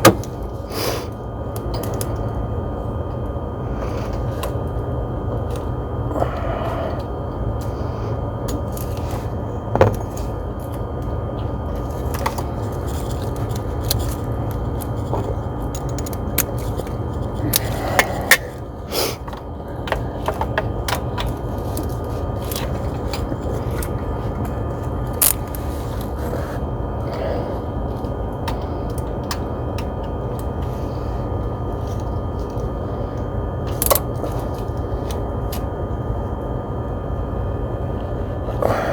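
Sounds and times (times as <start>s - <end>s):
steady shop hum: 0.0s - 38.9s
hand tools clicking and scraping: 11.8s - 24.5s.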